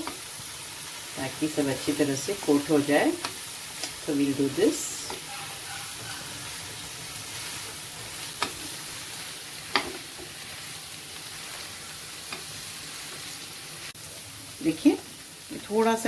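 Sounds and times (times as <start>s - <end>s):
food sizzling in a hot pan: 0.0s - 16.0s.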